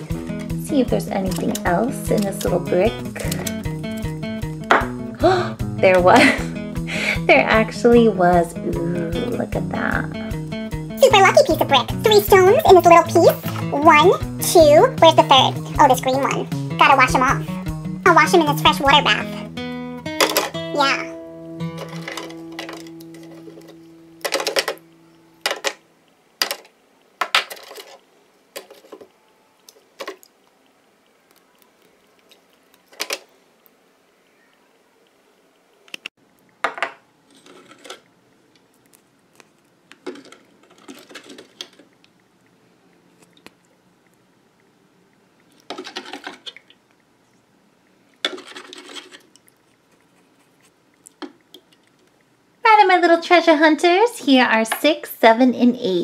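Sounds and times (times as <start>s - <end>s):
gemstones clattering in a dish: 21.8s - 24.8s, 26.4s - 28.0s
gemstones rattling in a dish: 26.4s - 28.0s, 40.0s - 41.9s.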